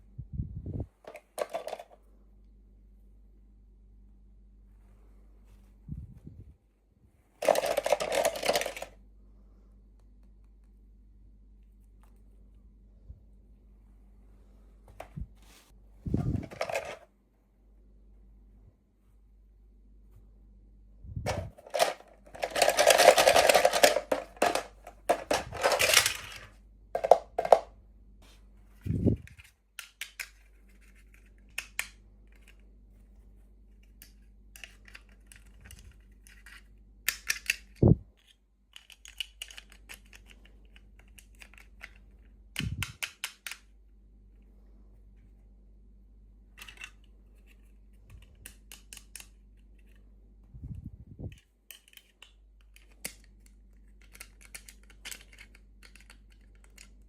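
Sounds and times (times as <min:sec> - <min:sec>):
toy pieces knocking down: 0:07.4 - 0:08.9, 0:21.3 - 0:26.4
plastic toy pieces clicking: 0:07.4 - 0:09.0, 0:21.3 - 0:26.4, 0:29.2 - 0:30.4, 0:31.2 - 0:32.6, 0:33.9 - 0:43.7, 0:46.6 - 0:47.1, 0:48.1 - 0:49.9, 0:51.3 - 0:57.0
plastic packaging crinkling: 0:21.5 - 0:26.4.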